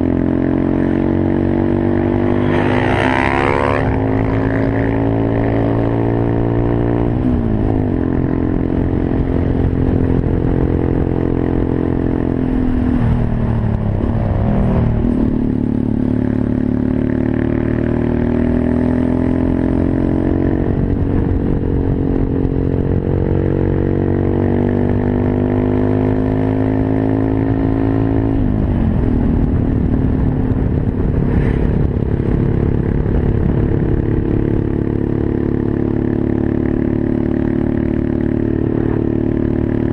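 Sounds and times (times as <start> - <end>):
small motorbike engine revving: 0.0 - 7.0.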